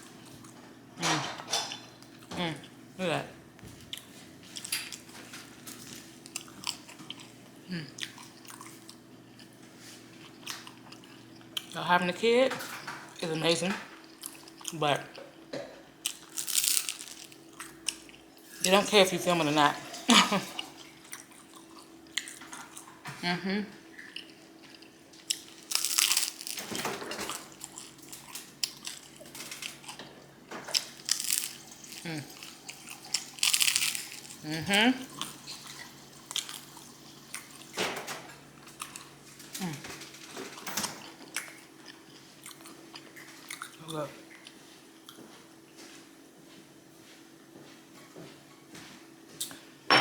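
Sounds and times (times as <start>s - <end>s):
crunchy food being chewed: 3.8s - 11.8s, 14.0s - 14.8s, 16.0s - 18.7s, 20.4s - 23.0s, 24.0s - 30.1s, 30.7s - 37.7s, 38.6s - 45.2s
person chewing and biting food: 16.0s - 18.2s, 24.0s - 26.6s, 27.3s - 30.0s, 30.7s - 37.7s.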